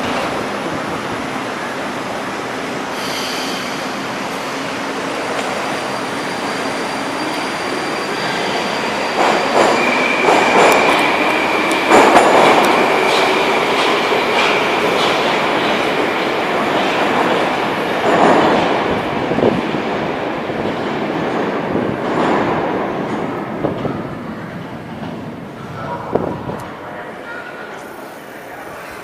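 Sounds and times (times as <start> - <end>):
metro train wheels on rails: 0.0 - 29.0
rail clatter: 8.6 - 27.6.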